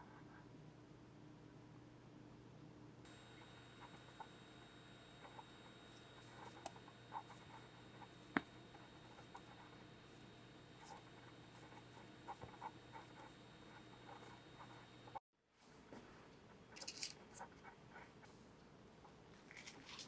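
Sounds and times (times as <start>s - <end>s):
low steady hum: 0.0s - 20.0s.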